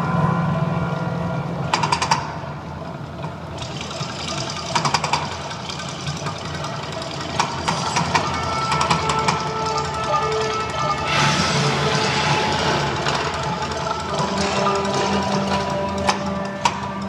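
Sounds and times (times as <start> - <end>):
sharp rattling clicks: 3.2 - 17.0
low rumble: 9.4 - 16.2.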